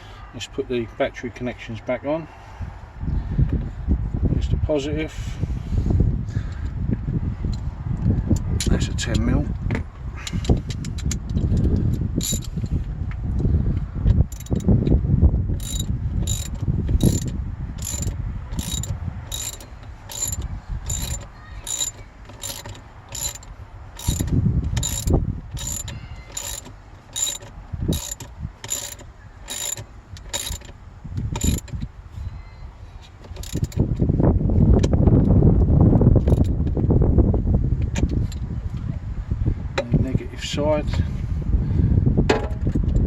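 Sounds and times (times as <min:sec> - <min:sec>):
ratchet spanner clicking: 0:10.3 - 0:12.8, 0:14.3 - 0:31.9, 0:33.2 - 0:34.0, 0:36.2 - 0:36.6.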